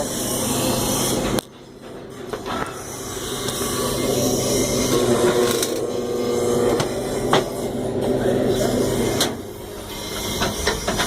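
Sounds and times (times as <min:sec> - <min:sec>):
low electrical buzz: 0:02.8 - 0:10.2.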